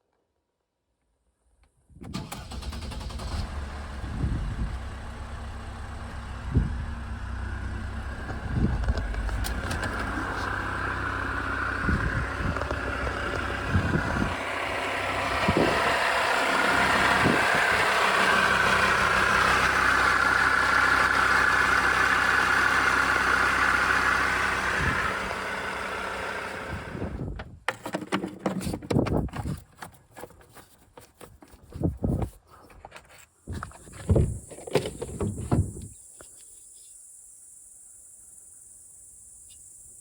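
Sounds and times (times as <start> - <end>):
car engine running: 2.2 - 27.4, 33.6 - 35.9.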